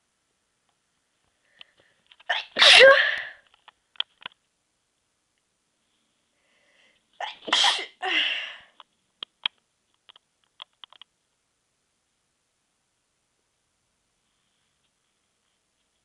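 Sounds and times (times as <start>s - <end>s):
person sneezing stifled: 2.3s - 3.4s, 7.2s - 8.6s
small clicks: 3.4s - 4.4s, 8.8s - 11.2s
faint breath: 5.8s - 7.1s.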